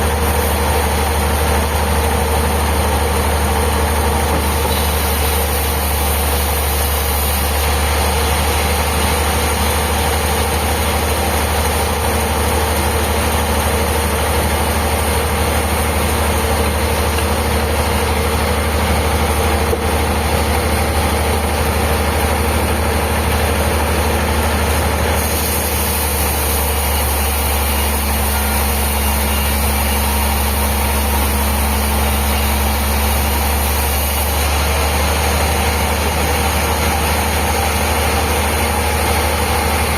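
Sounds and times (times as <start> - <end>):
sawmill machinery humming: 0.0 - 39.9.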